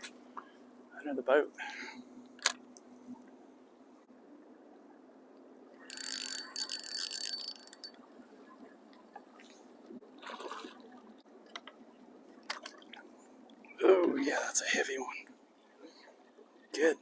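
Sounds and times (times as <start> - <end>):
faint rattle: 5.9 - 8.0
fishing reel whirring and clicking: 5.9 - 8.0.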